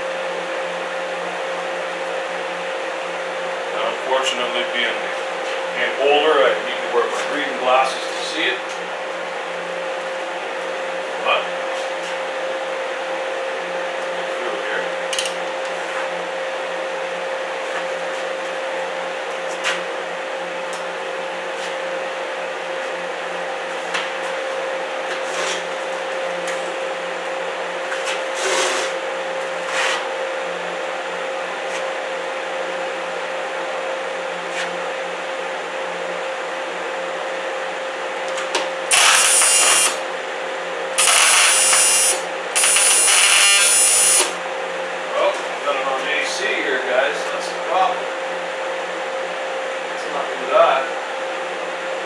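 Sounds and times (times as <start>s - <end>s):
steady hum: 37.7s - 52.0s
welding arc crackling: 38.9s - 40.0s, 41.0s - 44.4s.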